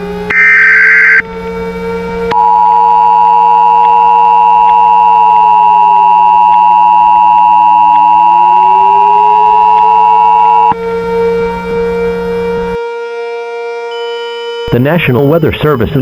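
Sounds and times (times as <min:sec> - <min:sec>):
siren: 0:00.0 - 0:14.8
buzzy data burst: 0:00.3 - 0:01.3
two-tone attention signal: 0:00.3 - 0:01.3, 0:02.3 - 0:10.7.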